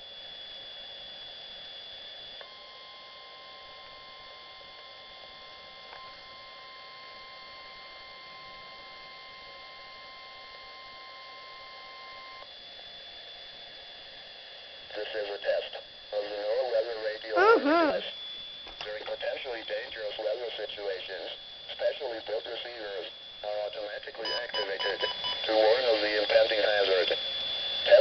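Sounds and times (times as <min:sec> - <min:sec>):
faint high whine: 0:00.0 - 0:28.0
radio hiss: 0:14.9 - 0:18.1, 0:18.8 - 0:28.0
steady alarm tone: 0:17.4 - 0:18.6, 0:24.2 - 0:28.0.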